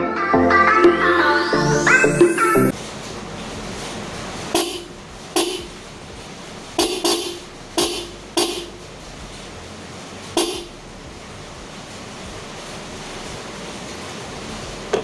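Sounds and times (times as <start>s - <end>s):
electric vehicle horn beeps: 4.6s - 5.8s, 6.8s - 8.8s, 10.4s - 10.7s.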